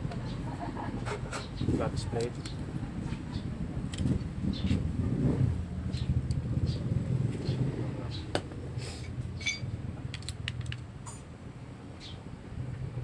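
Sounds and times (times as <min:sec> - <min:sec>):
metal clutch plates clinking: 0:09.4 - 0:10.6.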